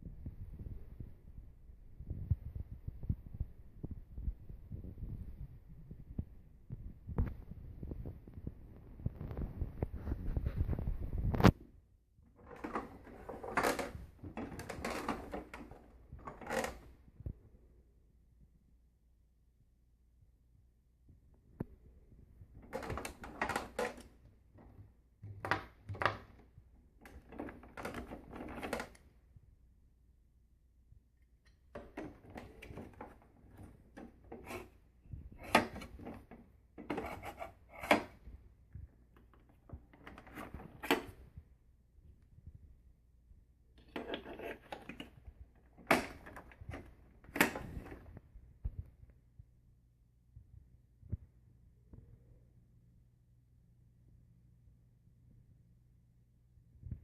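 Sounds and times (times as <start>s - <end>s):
plastic vacuum parts clattering: 12.3s - 16.9s, 22.6s - 29.1s, 31.7s - 38.3s, 39.1s - 41.3s, 43.8s - 48.2s.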